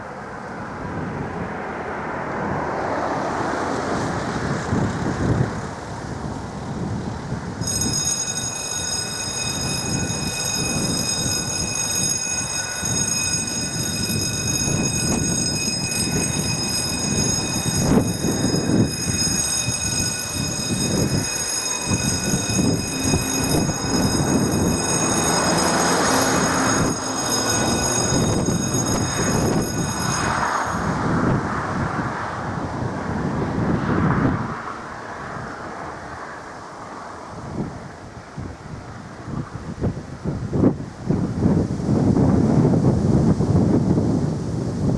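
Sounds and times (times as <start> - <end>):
train wheels rumbling: 7.6 - 31.7
crossing warning tone: 7.6 - 32.9.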